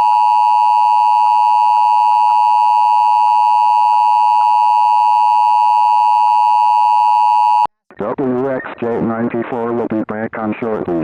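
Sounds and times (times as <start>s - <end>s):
loud steady alarm beep: 0.0s - 7.7s.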